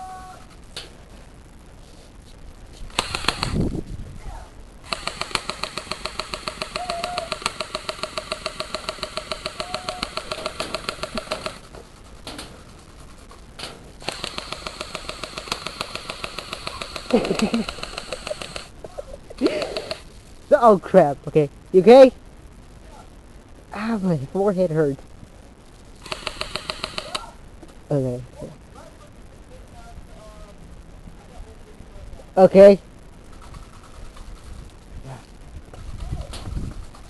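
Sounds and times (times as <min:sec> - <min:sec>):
airsoft gun firing full auto: 0:02.9 - 0:03.6, 0:04.9 - 0:11.7, 0:14.0 - 0:18.7, 0:19.4 - 0:20.0, 0:26.0 - 0:27.3
mechanical whine: 0:04.8 - 0:13.3, 0:14.0 - 0:18.7.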